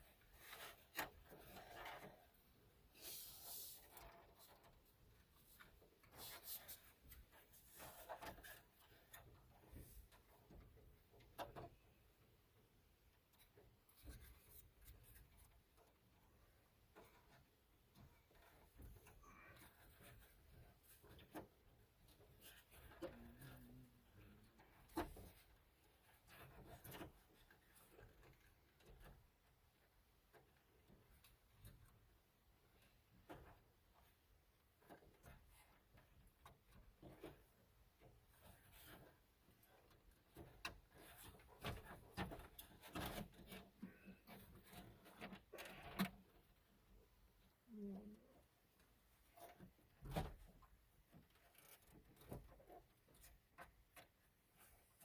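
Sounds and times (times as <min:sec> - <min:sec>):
clicks and rubbing of connectors: 0:48.7 - 0:55.0.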